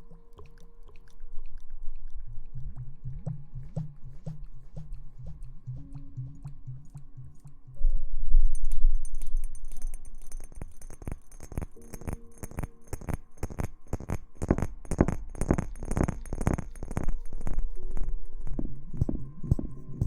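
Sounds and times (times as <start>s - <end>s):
faint background music: 0.0s - 20.0s
sharp crackling clicks: 8.6s - 19.1s.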